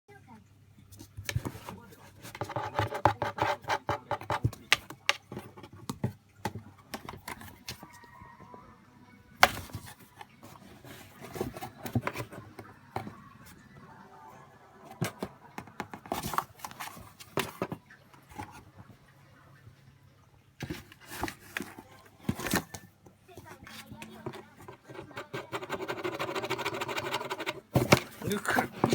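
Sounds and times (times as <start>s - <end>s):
cardboard box rustling and scraping: 9.4s - 13.2s, 14.9s - 18.6s, 20.6s - 25.0s, 27.4s - 28.9s.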